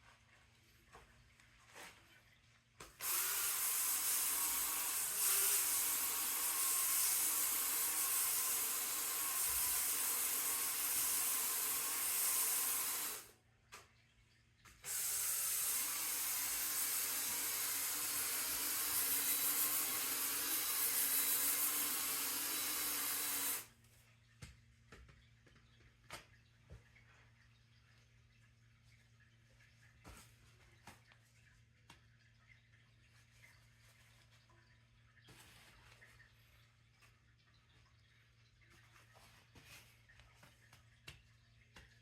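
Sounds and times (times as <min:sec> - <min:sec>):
drill spinning scrubbing brush: 0:03.0 - 0:13.3, 0:14.8 - 0:23.7.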